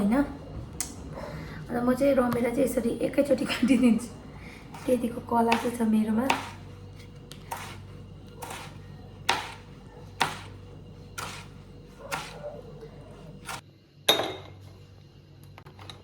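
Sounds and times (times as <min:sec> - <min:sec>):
knife chopping on cutting board: 0:04.7 - 0:10.6, 0:11.2 - 0:12.6, 0:13.2 - 0:13.6.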